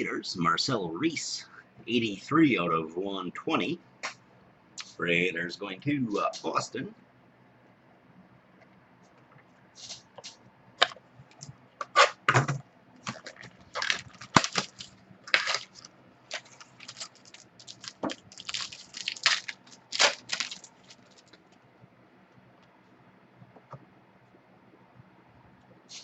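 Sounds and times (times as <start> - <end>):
cards and packaging being handled: 13.0 - 21.6.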